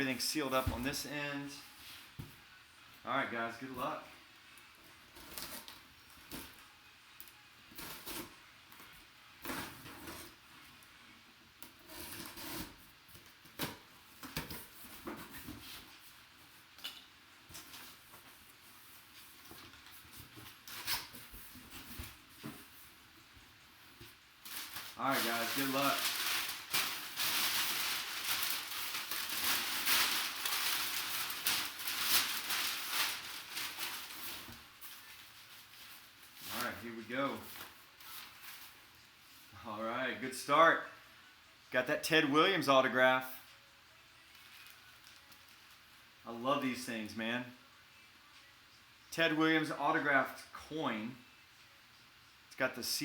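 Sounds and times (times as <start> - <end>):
packaging crinkling and rustling: 24.1 - 38.9, 44.2 - 46.0.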